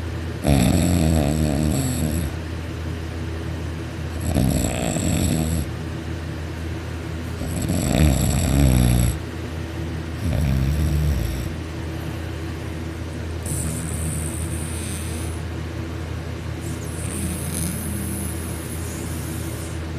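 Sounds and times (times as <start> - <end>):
man snoring loudly: 0.4 - 2.4, 4.2 - 5.7, 7.4 - 9.2, 10.2 - 11.6, 13.4 - 15.4, 16.6 - 19.8.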